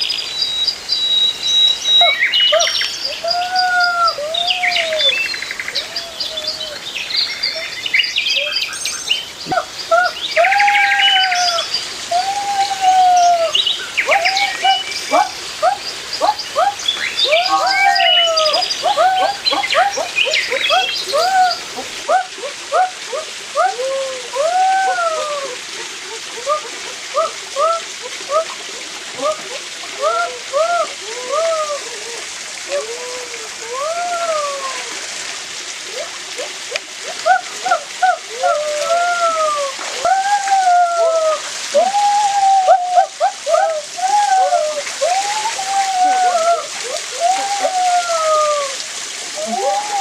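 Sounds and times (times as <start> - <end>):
birds whistling calls: 0.0 - 21.9
high bird chirps: 0.3 - 3.1.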